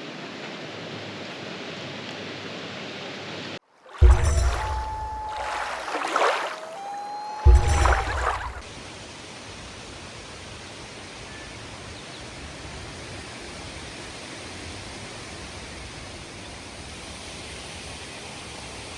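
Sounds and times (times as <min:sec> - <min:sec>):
music: 0:04.0 - 0:05.8, 0:07.5 - 0:08.6.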